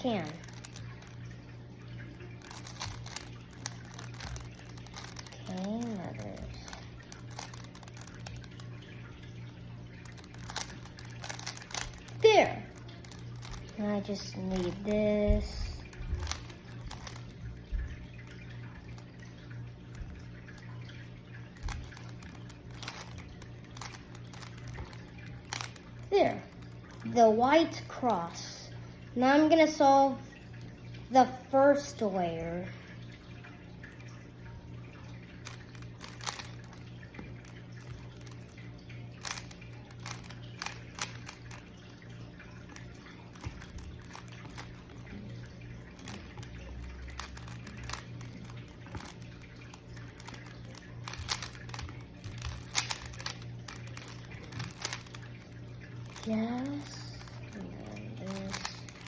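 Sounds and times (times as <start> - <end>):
rubik's cube clicking: 0.0 - 1.2, 2.4 - 8.6, 10.0 - 13.8, 16.2 - 17.2, 21.6 - 25.8, 35.4 - 36.8, 39.2 - 41.6, 43.3 - 44.8, 47.2 - 49.2, 50.2 - 55.2, 58.3 - 59.0
steady low hum: 0.0 - 59.0.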